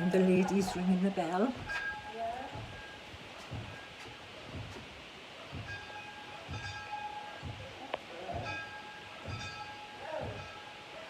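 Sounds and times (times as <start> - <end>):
dull low thuds: 0.3 - 10.6
church bell ringing: 5.6 - 11.0.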